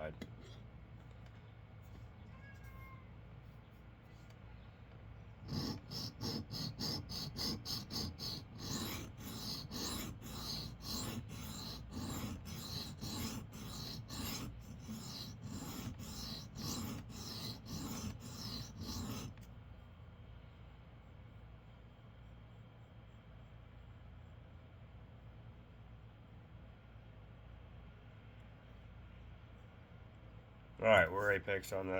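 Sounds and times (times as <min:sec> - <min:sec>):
knife blade scraping on sharpening stone: 0:06.0 - 0:19.3.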